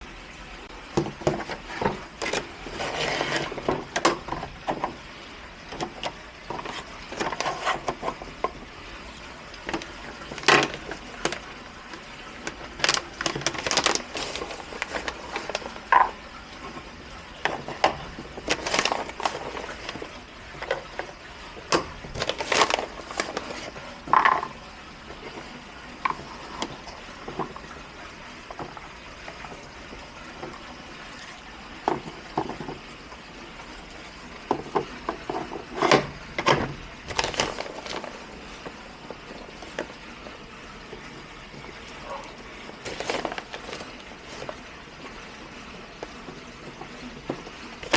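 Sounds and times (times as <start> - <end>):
hard objects clicking and scraping: 12.4 - 16.2, 17.4 - 21.1, 21.7 - 24.5, 37.1 - 38.8, 42.8 - 44.6.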